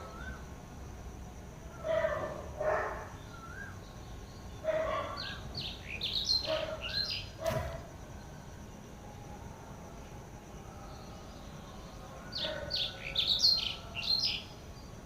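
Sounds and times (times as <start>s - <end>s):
wild birds calling: 0.0s - 0.4s, 1.6s - 8.0s, 12.1s - 14.6s.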